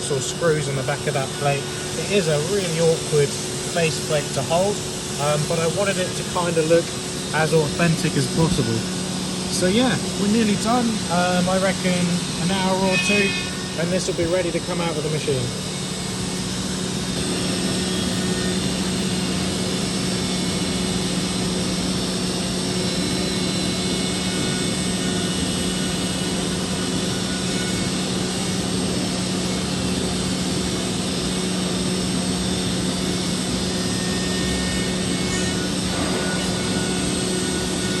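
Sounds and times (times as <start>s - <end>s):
spindle whirring while cutting: 0.0s - 38.0s
low hum: 6.9s - 20.3s.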